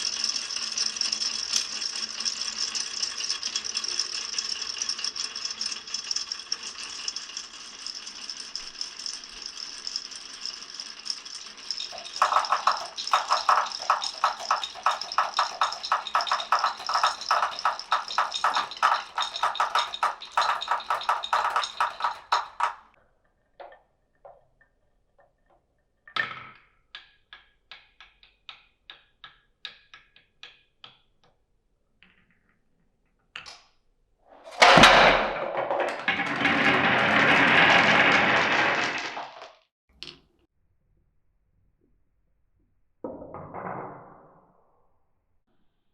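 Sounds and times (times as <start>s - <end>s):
marbles rattling down wooden run: 0.0s - 22.8s, 34.6s - 39.6s.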